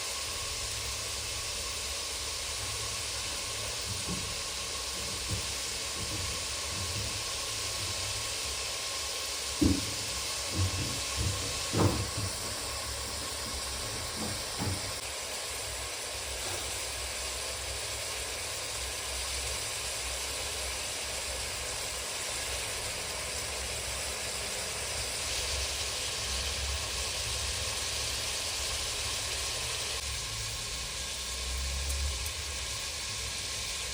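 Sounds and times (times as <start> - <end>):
food sizzling in a pan: 0.0 - 33.9
short knocks: 9.6 - 12.6.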